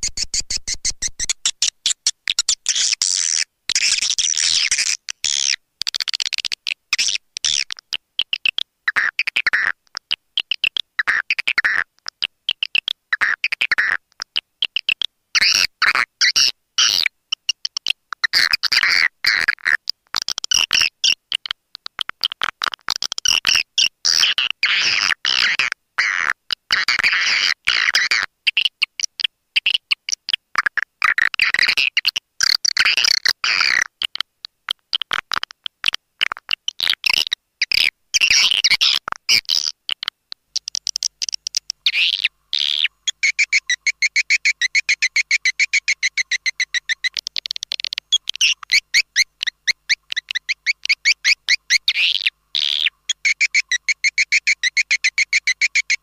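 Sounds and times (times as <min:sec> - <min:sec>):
high bird chirping: 0:00.0 - 0:05.5, 0:40.6 - 0:56.0.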